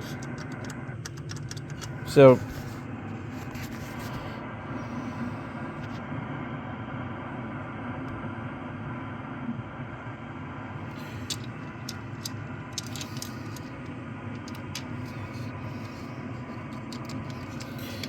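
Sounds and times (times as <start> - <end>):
light clicks and taps: 0.0 - 2.0, 11.0 - 18.0
faint hum: 0.0 - 18.0.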